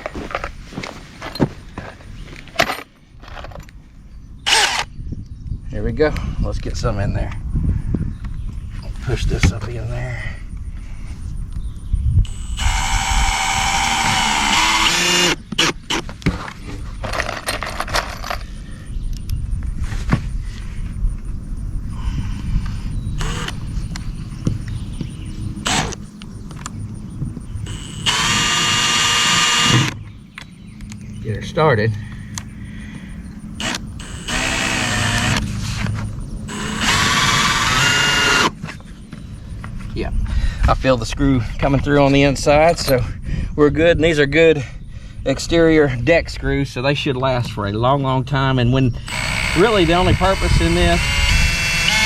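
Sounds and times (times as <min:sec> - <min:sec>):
power drill driving a screw: 0:04.5 - 0:04.9, 0:12.3 - 0:16.0, 0:23.2 - 0:23.6, 0:25.6 - 0:26.0, 0:27.7 - 0:30.0, 0:33.6 - 0:38.6, 0:49.1 - 0:52.0.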